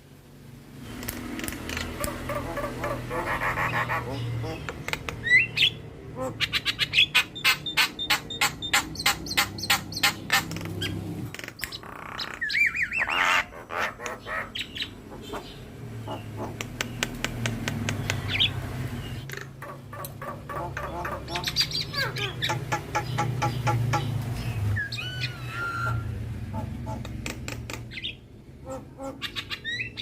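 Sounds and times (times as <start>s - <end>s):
bird chattering song: 1.7s - 30.0s
whistled bird trill: 24.8s - 26.1s.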